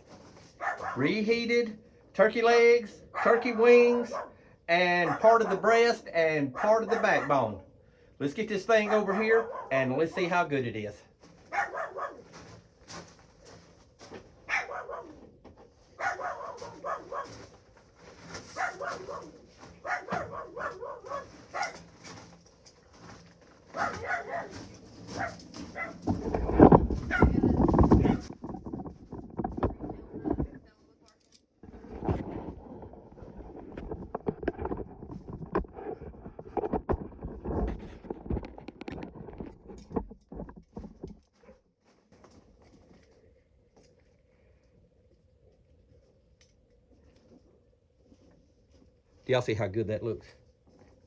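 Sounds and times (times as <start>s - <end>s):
rustling: 0.0s - 1.0s, 11.0s - 44.6s
dog barking: 0.6s - 1.1s, 3.1s - 4.4s, 5.0s - 5.7s, 6.5s - 7.5s, 8.8s - 9.8s, 11.5s - 12.2s, 14.5s - 15.2s, 16.0s - 17.4s, 18.5s - 21.8s, 23.7s - 26.0s, 27.1s - 27.3s.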